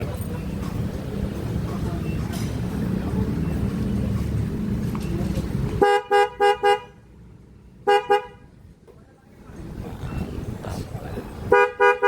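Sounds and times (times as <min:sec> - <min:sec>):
motorcycle horn toots: 0:05.8 - 0:07.0, 0:07.8 - 0:08.5, 0:11.5 - 0:12.0.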